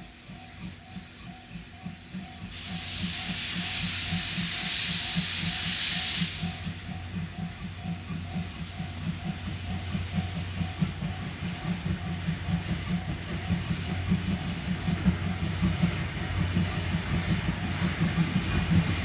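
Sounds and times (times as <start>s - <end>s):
steam locomotive hissing steam: 0.0s - 19.0s
crossing warning bell ringing: 6.4s - 18.9s.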